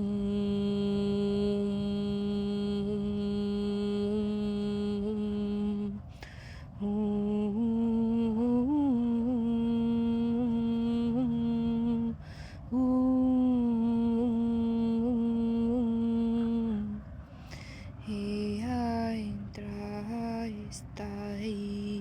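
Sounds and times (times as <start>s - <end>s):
woman humming low notes: 0.0s - 6.2s, 6.8s - 17.1s
quick in-breaths: 6.1s - 6.8s, 12.2s - 12.7s, 17.2s - 18.0s.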